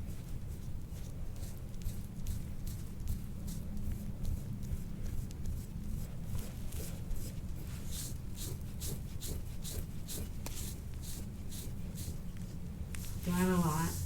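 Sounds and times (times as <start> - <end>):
steady low hum: 0.0 - 14.0
scraper scraping skin: 1.4 - 12.5.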